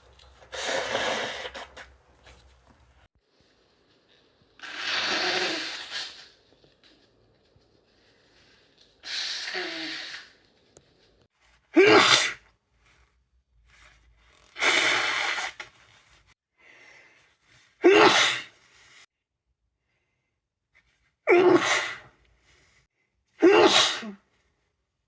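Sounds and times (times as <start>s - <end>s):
person sneezing: 11.8s - 12.4s, 17.8s - 18.5s, 21.3s - 22.1s, 23.4s - 24.2s.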